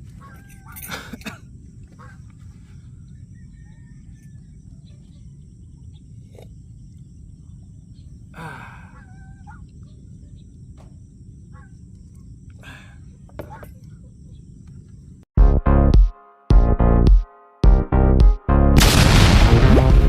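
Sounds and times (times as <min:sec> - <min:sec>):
faint bird calls: 0:00.0 - 0:06.5, 0:07.4 - 0:15.2.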